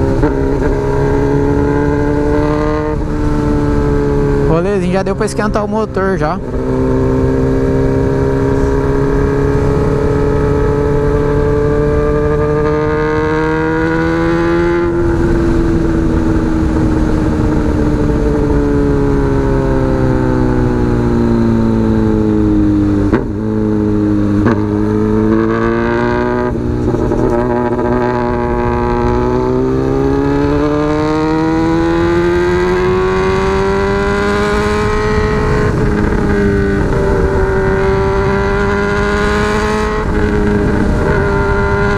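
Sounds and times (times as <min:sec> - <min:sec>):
motorcycle engine revving: 0:00.0 - 0:41.9.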